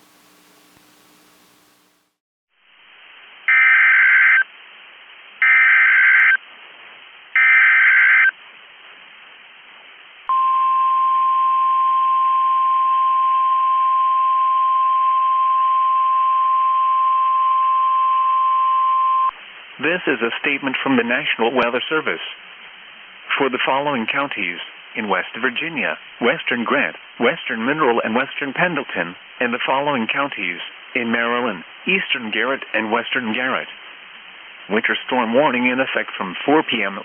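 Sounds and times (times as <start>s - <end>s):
single-pitch warning alarm tone: 10.3s - 19.3s
radio hiss: 19.3s - 37.0s.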